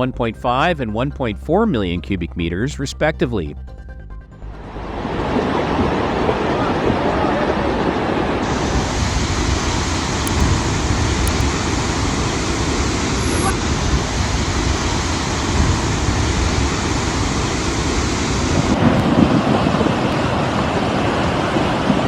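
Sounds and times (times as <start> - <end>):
floodwater rushing: 4.7 - 22.0
wind buffeting microphone: 4.8 - 22.0.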